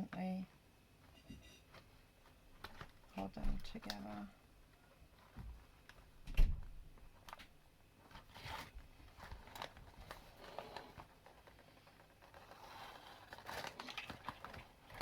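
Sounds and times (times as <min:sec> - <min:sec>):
paper rustling and clicking: 0:07.2 - 0:15.0.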